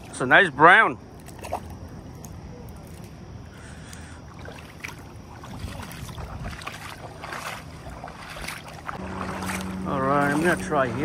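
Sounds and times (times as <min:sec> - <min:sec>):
river water flowing: 0:03.5 - 0:11.0
wind on microphone: 0:05.4 - 0:07.1.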